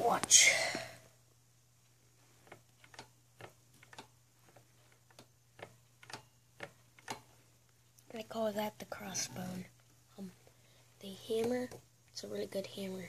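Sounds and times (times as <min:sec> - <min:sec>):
faint bike clicking: 0:02.4 - 0:08.2.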